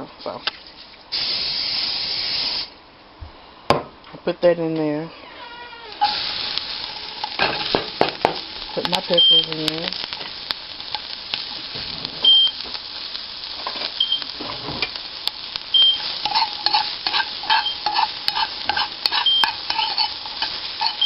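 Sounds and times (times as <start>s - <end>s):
peppers sizzling in a pan: 1.1s - 2.8s, 5.8s - 21.0s
utensil scraping a pan: 15.8s - 21.0s.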